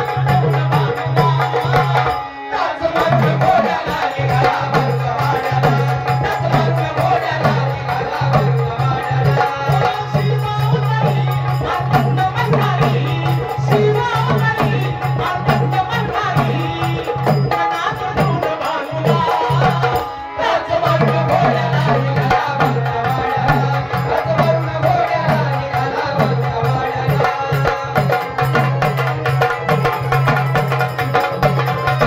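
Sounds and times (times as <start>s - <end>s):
folk music instruments: 0.0s - 32.0s
hand drum beating: 21.3s - 32.0s.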